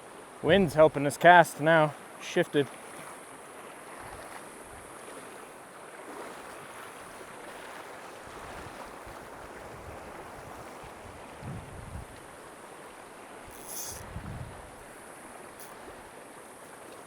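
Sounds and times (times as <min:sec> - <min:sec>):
wind buffeting microphone: 0:08.4 - 0:12.2, 0:13.8 - 0:14.9.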